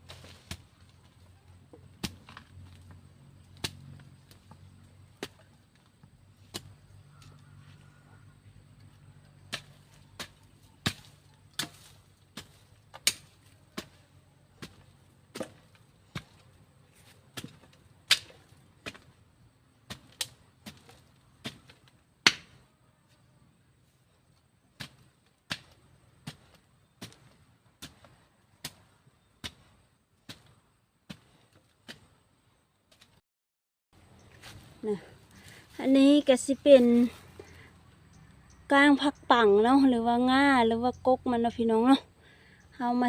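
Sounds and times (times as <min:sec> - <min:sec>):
hoe chopping into soil: 0:00.0 - 0:01.2, 0:01.8 - 0:07.3, 0:09.4 - 0:22.7, 0:24.4 - 0:32.3.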